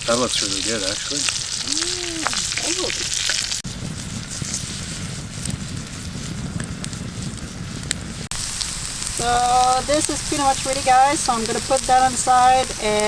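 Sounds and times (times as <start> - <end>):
vegetables sizzling in a pan: 0.0 - 3.6, 8.3 - 13.0
fire burning outdoors: 0.0 - 13.0.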